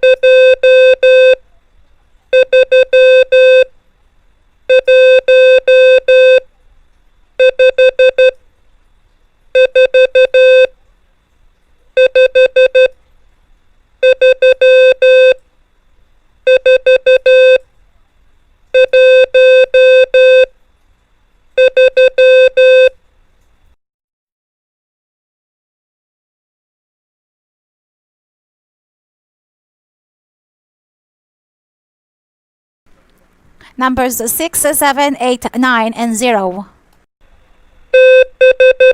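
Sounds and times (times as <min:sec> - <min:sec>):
morse code beeps: 0:00.0 - 0:01.4, 0:02.4 - 0:03.7, 0:04.7 - 0:06.4, 0:07.4 - 0:08.4, 0:09.6 - 0:10.7, 0:12.0 - 0:12.9, 0:14.0 - 0:15.4, 0:16.5 - 0:17.6, 0:18.8 - 0:20.5, 0:21.6 - 0:23.0, 0:38.0 - 0:38.9.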